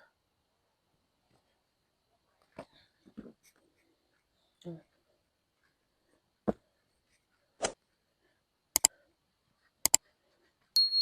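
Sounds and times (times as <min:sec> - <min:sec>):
high ringing tone: 0:10.8 - 0:11.0.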